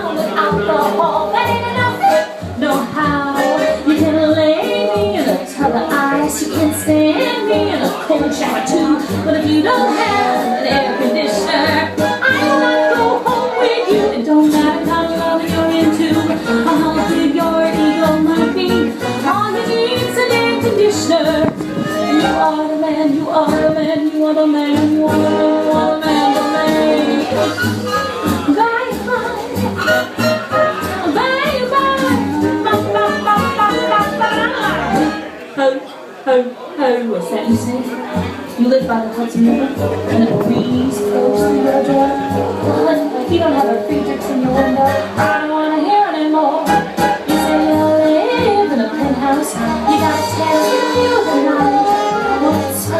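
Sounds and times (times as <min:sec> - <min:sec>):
person singing: 0:00.0 - 0:35.2, 0:38.7 - 0:52.9
repeating bass line: 0:39.4 - 0:42.9.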